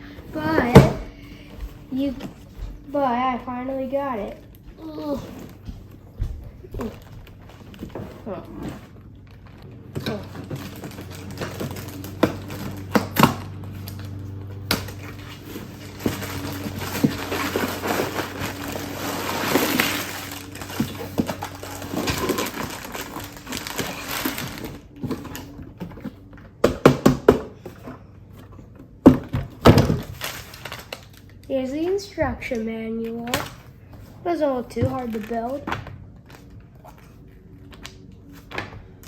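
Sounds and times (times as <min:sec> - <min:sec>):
cardboard and plastic rustling: 0:00.1 - 0:26.9, 0:27.5 - 0:39.0.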